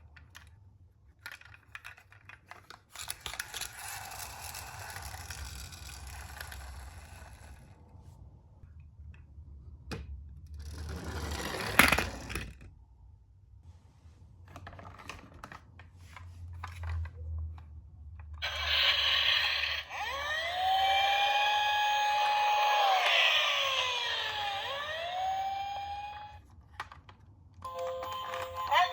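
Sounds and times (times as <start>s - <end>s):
toy car rolling and scraping: 1.1s - 7.8s, 10.5s - 12.7s, 18.2s - 26.4s
electronic toy siren wailing: 18.4s - 26.4s.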